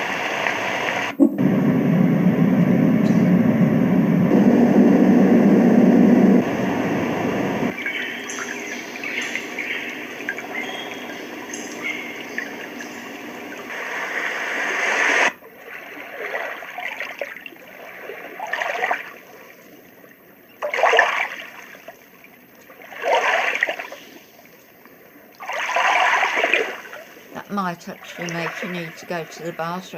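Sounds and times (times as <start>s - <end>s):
surging water sound: 0.0s - 29.9s
trickling water from machine: 15.4s - 19.4s, 20.6s - 23.9s, 25.3s - 29.3s.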